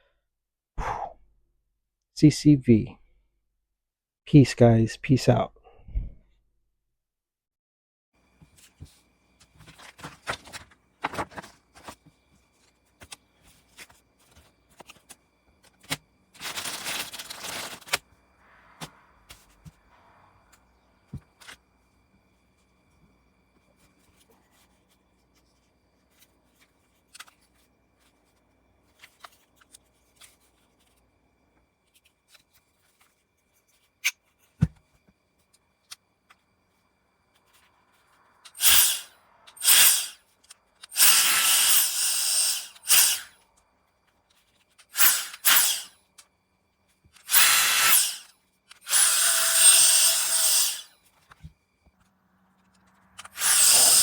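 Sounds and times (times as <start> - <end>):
air duster blowing air: 38.5 - 40.2, 40.9 - 43.4, 44.9 - 45.9, 47.2 - 50.9, 53.2 - 54.0.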